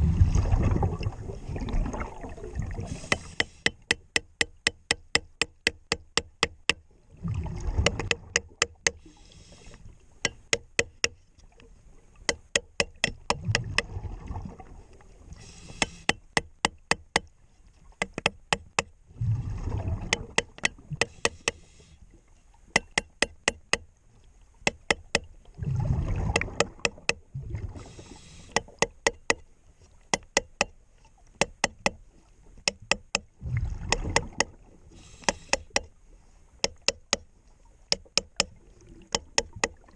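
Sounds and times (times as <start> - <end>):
exhaled bubbles underwater: 0.0 - 3.4, 7.1 - 8.7, 13.2 - 15.6, 19.1 - 21.0, 25.4 - 28.8, 33.4 - 35.1
regulator inhale hiss: 2.8 - 3.7, 9.0 - 10.0, 15.4 - 16.2, 21.1 - 22.1, 27.8 - 28.8, 34.9 - 35.8
sharp taps: 37.9 - 38.5.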